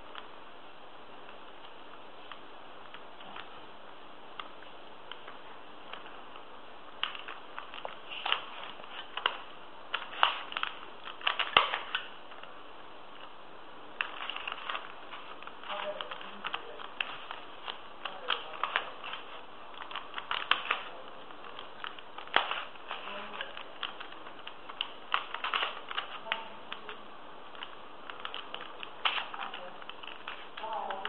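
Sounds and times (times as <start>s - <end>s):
puzzle cube clicking: 7.0s - 12.5s, 14.0s - 31.0s.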